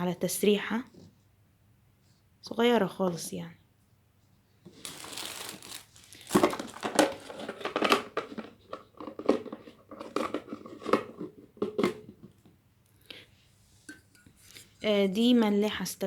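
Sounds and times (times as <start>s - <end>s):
packaging crinkling by hand: 4.7s - 10.9s.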